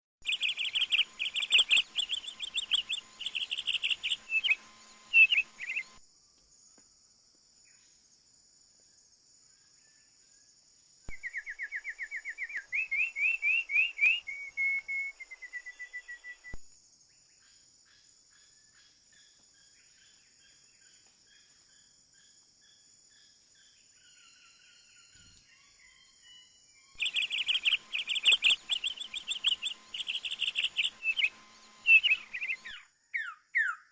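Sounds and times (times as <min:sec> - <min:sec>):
small birds chirping: 0:00.2 - 0:06.0, 0:11.0 - 0:33.9
trilled rising bird notes: 0:00.2 - 0:06.0, 0:27.0 - 0:33.8
high insect drone: 0:00.3 - 0:25.5, 0:27.0 - 0:32.8.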